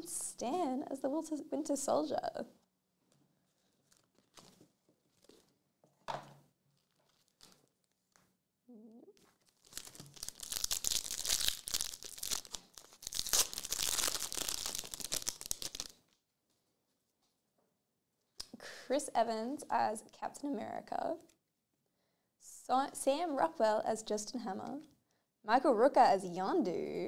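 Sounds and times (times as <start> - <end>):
soft rustles: 3.0 - 6.0, 6.7 - 8.3
foil wrapper tearing and crinkling: 6.8 - 8.0, 9.2 - 16.0.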